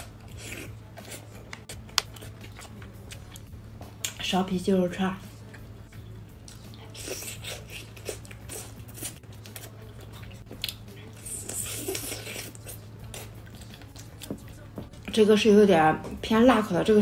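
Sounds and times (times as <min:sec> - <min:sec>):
biting and chewing mouth noise: 0:06.4 - 0:14.9.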